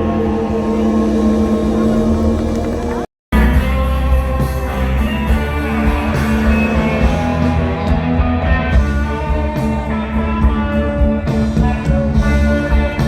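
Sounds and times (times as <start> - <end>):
instrumental rock music: 3.3 - 13.0.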